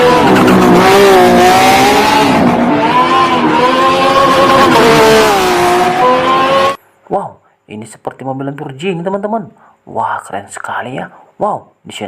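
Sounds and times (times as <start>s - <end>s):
race car engine revving: 0.0s - 6.8s.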